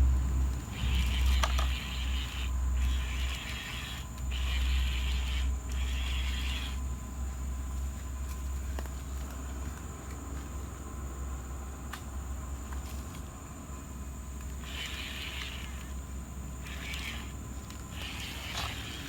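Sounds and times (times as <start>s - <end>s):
small electric motors whirring: 0.6s - 7.4s, 14.2s - 19.0s.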